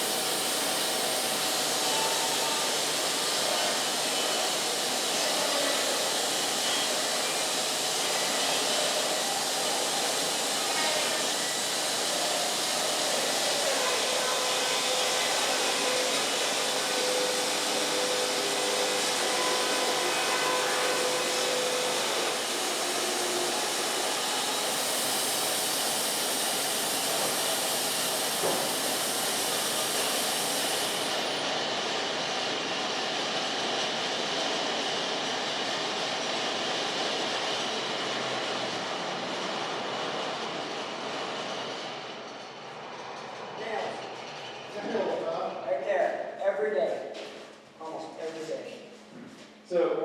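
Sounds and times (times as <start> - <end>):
band sawmill running: 0.0 - 45.6.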